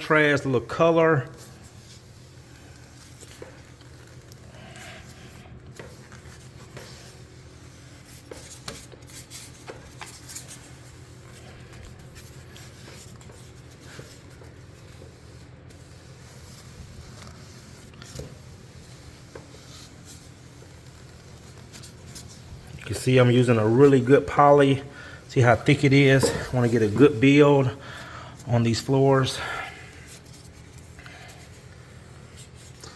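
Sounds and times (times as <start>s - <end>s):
applicator scraping wooden stairs: 22.8s - 27.8s.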